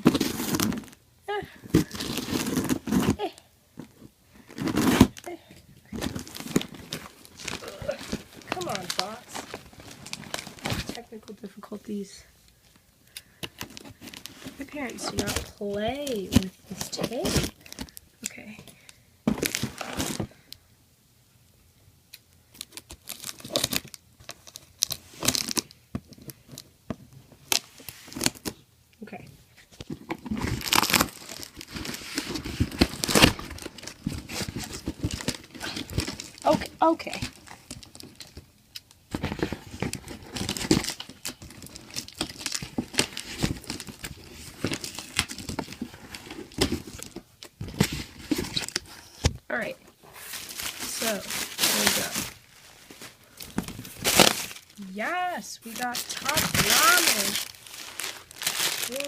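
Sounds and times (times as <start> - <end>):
cardboard crinkling and rustling: 0.0 - 1.0, 1.7 - 5.3, 5.9 - 11.2, 13.6 - 18.0, 19.3 - 20.4, 22.5 - 28.6, 29.6 - 38.5, 39.1 - 49.4, 50.1 - 59.0
packing tape ripping: 0.0 - 1.0, 1.8 - 3.3, 4.5 - 5.3, 22.5 - 25.7, 30.3 - 36.6, 50.4 - 52.4, 53.4 - 54.8, 55.6 - 59.0
cardboard flaps crinkling: 5.9 - 11.1, 29.7 - 38.5, 50.1 - 59.0.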